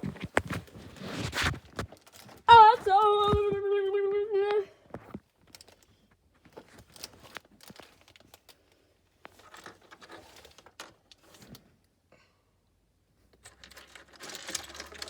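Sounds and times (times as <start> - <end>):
soft rustling: 0.0 - 11.5.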